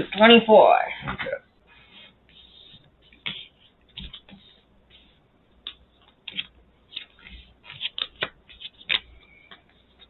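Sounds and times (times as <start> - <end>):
playing cards clicking and sliding: 1.8 - 10.0.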